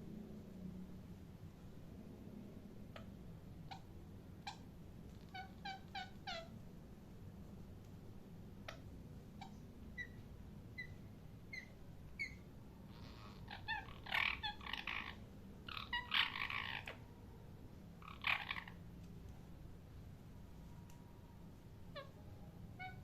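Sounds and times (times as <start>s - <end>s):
parrot chirping: 3.7s - 4.6s, 5.2s - 6.5s, 8.7s - 17.1s, 18.0s - 18.9s, 21.9s - 23.0s
parrot harsh calls: 5.3s - 6.5s, 10.8s - 17.0s, 18.0s - 18.8s, 21.9s - 23.0s.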